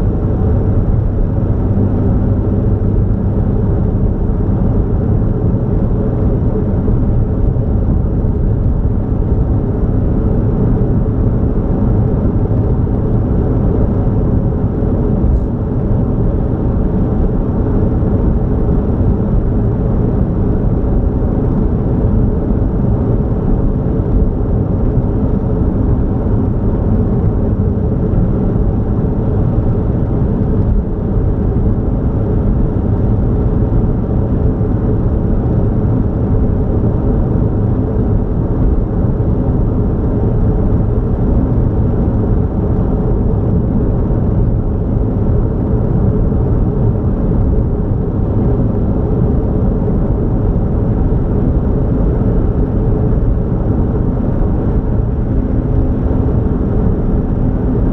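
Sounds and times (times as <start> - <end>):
road and engine rumble: 0.0 - 57.9.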